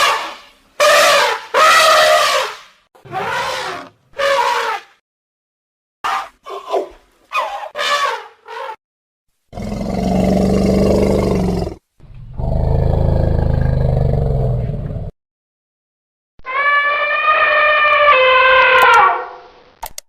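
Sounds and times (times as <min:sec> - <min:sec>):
elephant high-pitched cries: 0:00.0 - 0:04.9, 0:06.1 - 0:08.8, 0:16.4 - 0:19.3
elephant trumpeting: 0:00.0 - 0:04.9, 0:06.1 - 0:08.8, 0:16.4 - 0:19.4
elephant low roars: 0:09.6 - 0:15.1.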